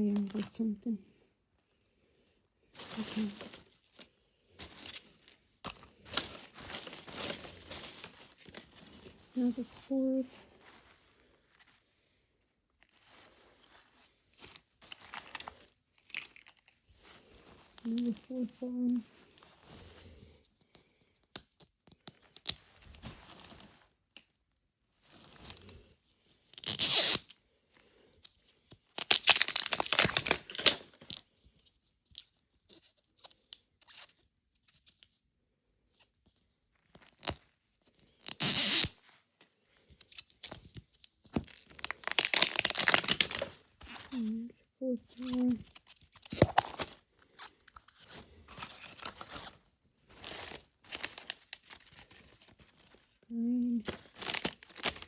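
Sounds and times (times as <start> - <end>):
plastic wrappers tearing and crinkling: 2.8 - 10.4, 14.4 - 19.0, 26.5 - 27.4, 28.9 - 31.2, 36.9 - 37.4, 38.1 - 39.0, 40.2 - 44.3, 45.1 - 55.0.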